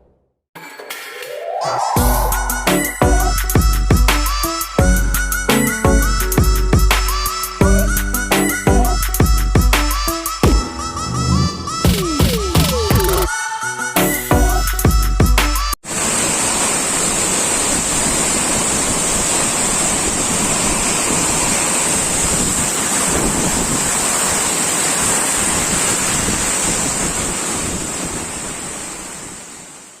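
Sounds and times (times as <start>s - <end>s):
background music: 1.4s - 15.8s
waterfall rushing: 15.9s - 29.7s.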